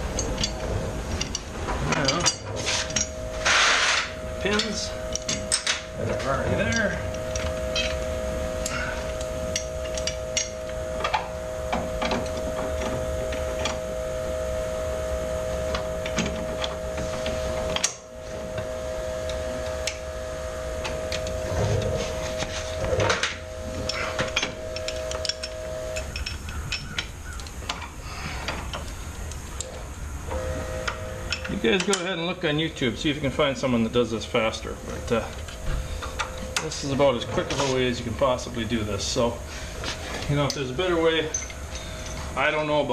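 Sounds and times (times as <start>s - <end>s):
metal clanks and knocks: 0.0s - 13.8s, 15.7s - 18.7s, 20.8s - 29.0s
steady low hum: 0.0s - 42.9s.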